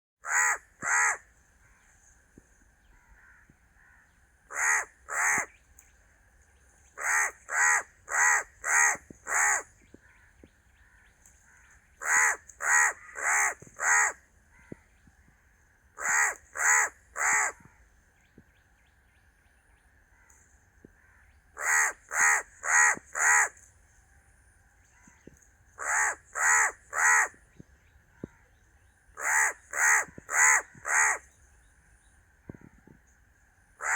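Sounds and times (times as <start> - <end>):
crow cawing: 0.2 - 1.2, 2.9 - 5.6, 7.0 - 14.8, 16.0 - 17.8, 21.0 - 23.5, 25.8 - 27.4, 29.2 - 31.2.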